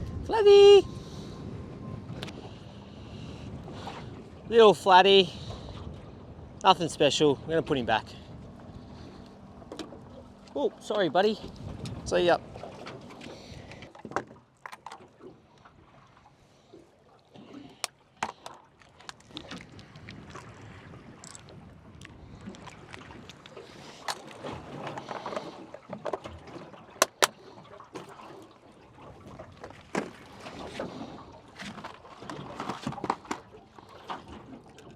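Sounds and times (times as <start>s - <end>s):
water lapping against boat: 0.0s - 34.9s
sharp clicks and knocks: 27.0s - 27.3s.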